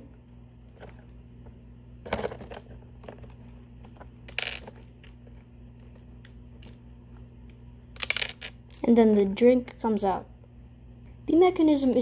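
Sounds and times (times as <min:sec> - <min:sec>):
plastic piece dropping clatter: 0:04.3 - 0:04.8, 0:08.0 - 0:08.6
plastic bricks clicking: 0:08.0 - 0:08.5.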